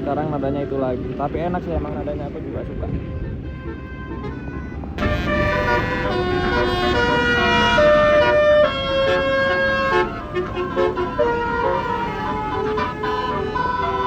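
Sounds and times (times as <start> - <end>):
multi-tone bus horn melody: 2.9 - 14.0.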